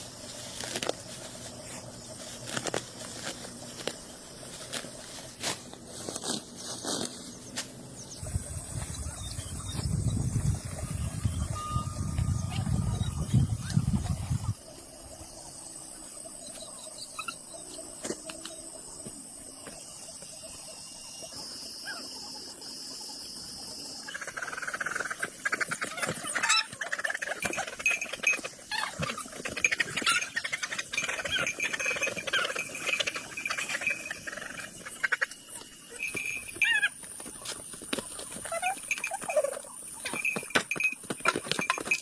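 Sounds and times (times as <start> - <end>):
insects trilling: 0.0 - 42.0.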